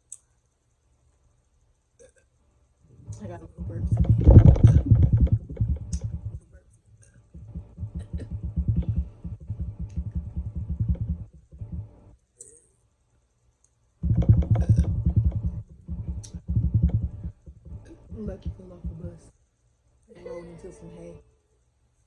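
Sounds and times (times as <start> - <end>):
person burping: 2.0 - 2.3.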